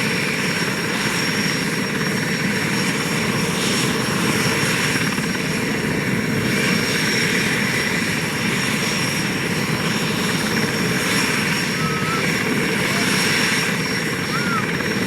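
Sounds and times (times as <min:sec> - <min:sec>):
helicopter rotor and engine noise: 0:00.0 - 0:15.0
helicopter turbine whine: 0:00.0 - 0:15.0.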